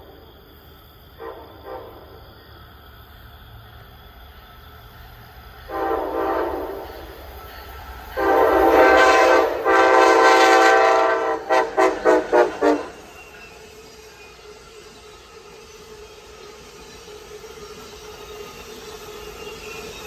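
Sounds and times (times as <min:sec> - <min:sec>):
train air horn: 0:01.2 - 0:02.1, 0:05.7 - 0:07.0, 0:08.2 - 0:13.2.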